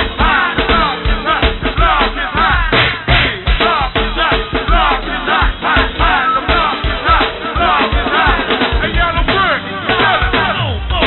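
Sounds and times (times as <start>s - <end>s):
live band music on lo-fi tape: 0.0s - 11.0s.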